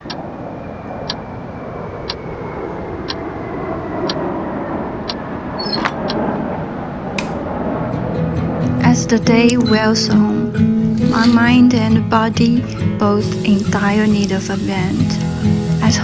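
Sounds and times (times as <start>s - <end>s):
short high tick: 7.2s - 7.5s
sharp click: 7.2s - 7.6s, 9.5s - 9.8s, 10.8s - 11.5s.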